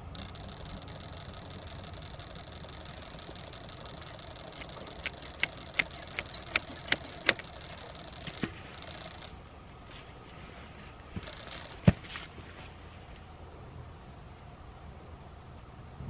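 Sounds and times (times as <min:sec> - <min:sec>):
sharp clicks: 0:00.0 - 0:09.3
low background rumble: 0:00.0 - 0:16.0.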